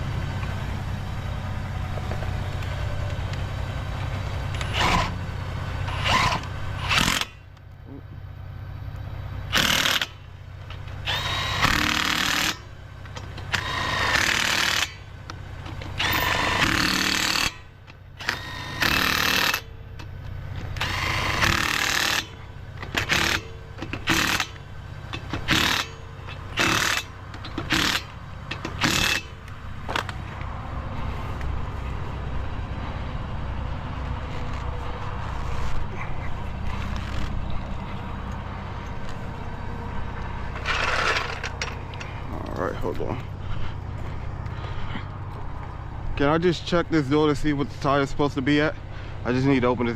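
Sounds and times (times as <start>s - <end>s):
steady low rumble: 0.0s - 7.0s, 24.6s - 49.9s
impact wrench bursts: 4.6s - 5.2s, 5.9s - 7.4s, 9.5s - 15.1s, 15.7s - 19.7s, 20.7s - 30.1s, 40.6s - 42.1s.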